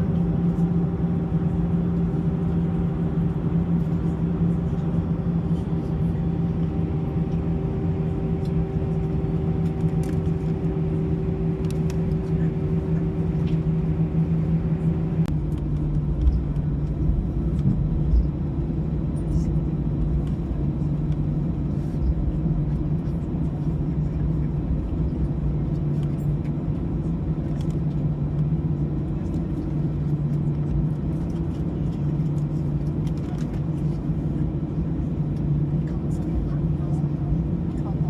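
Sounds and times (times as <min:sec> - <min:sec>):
aircraft cabin drone: 0:00.0 - 0:38.0.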